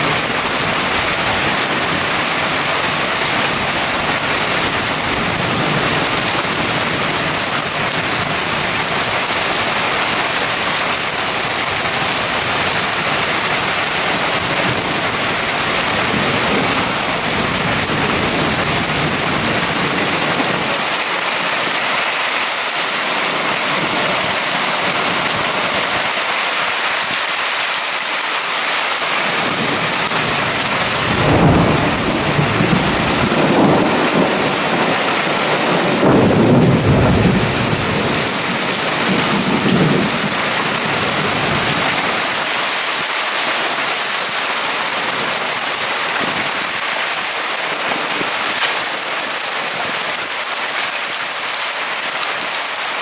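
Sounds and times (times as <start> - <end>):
thunder rumbling: 0.0 - 26.3, 29.2 - 42.8
heavy rain falling: 0.0 - 53.0.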